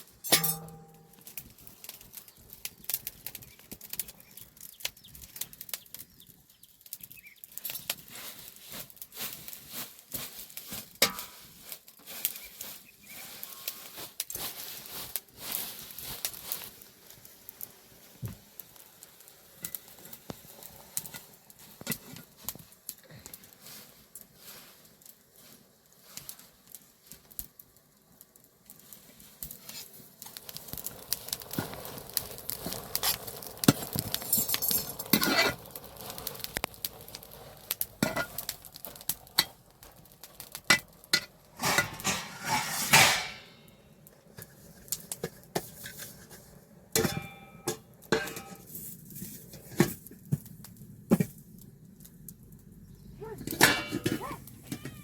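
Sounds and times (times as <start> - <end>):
dishes and utensils clattering: 0.3 - 1.0, 40.7 - 43.6, 47.0 - 48.6, 53.4 - 55.0
dishes scraping: 0.3 - 1.0, 40.7 - 43.6, 47.0 - 48.6, 53.4 - 55.0.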